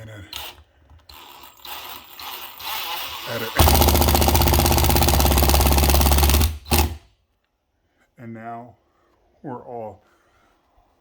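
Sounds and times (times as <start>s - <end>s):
hammer drill driving a screw: 0.3s - 7.1s.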